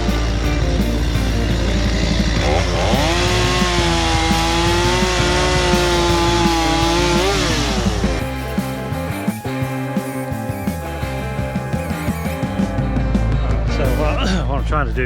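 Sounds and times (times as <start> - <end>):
chainsaw revving: 0.0 - 9.1.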